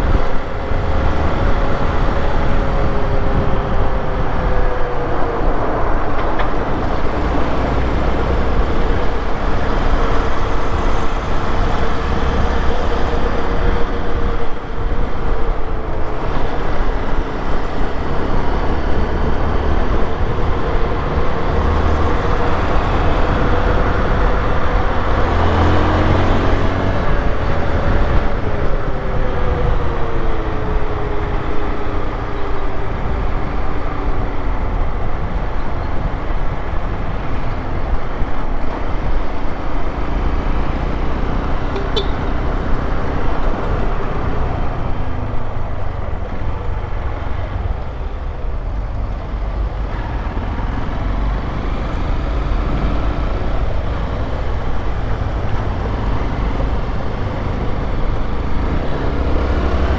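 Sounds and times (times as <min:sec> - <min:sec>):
motorcycle engine running: 0:41.6 - 0:44.4.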